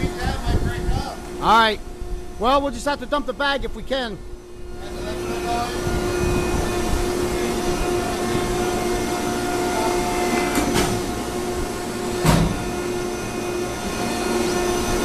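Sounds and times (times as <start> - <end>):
baler humming: 0.0 - 15.0
loud thump: 12.2 - 12.7.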